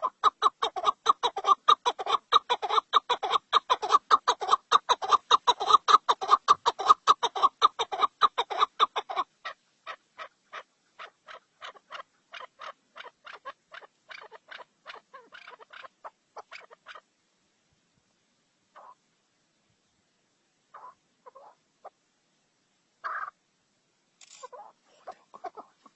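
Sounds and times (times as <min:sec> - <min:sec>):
bird clucking: 0:00.0 - 0:17.1, 0:18.8 - 0:19.0, 0:20.7 - 0:22.0, 0:23.0 - 0:23.4, 0:24.3 - 0:25.9.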